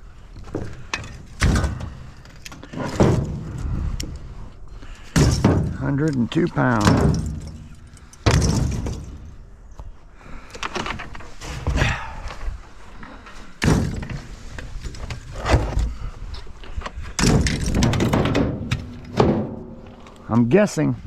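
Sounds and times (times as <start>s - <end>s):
metal rattling: 5.0s - 9.5s, 17.2s - 20.2s.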